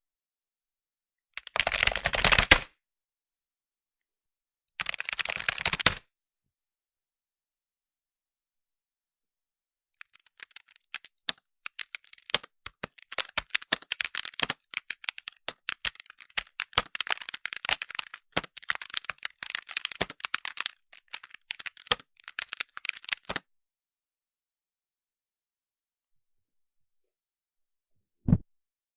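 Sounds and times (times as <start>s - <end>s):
typing on computer keyboard: 1.4s - 2.6s, 4.8s - 6.0s, 10.0s - 23.4s.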